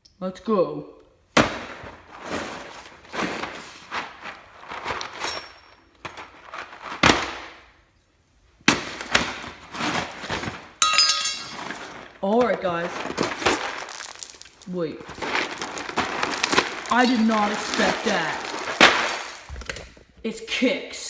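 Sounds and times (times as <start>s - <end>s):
cardboard box being torn open: 13.0s - 19.7s.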